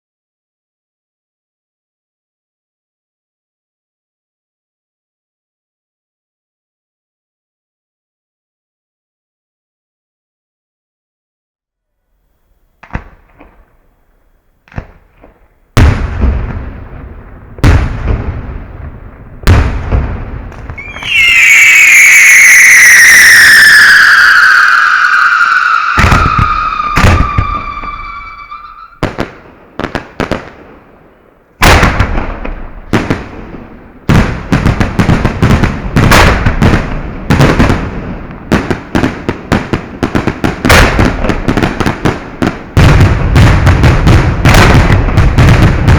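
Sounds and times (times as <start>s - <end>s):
fireworks bursting with sharp bangs: 12.6s - 45.9s
whistling firework falling in pitch: 19.5s - 29.3s.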